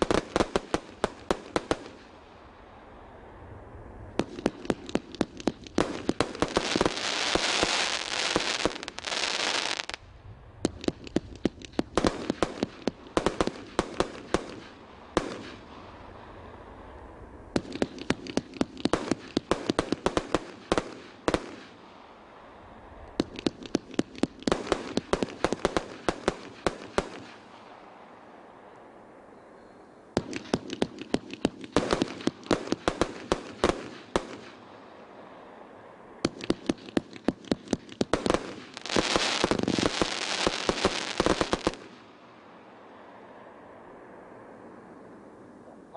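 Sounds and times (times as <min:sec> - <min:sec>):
fireworks cake firing volleys: 0:00.0 - 0:02.2, 0:04.2 - 0:10.0, 0:10.6 - 0:16.4, 0:17.5 - 0:21.8, 0:23.1 - 0:27.6, 0:30.2 - 0:34.6, 0:36.2 - 0:42.0.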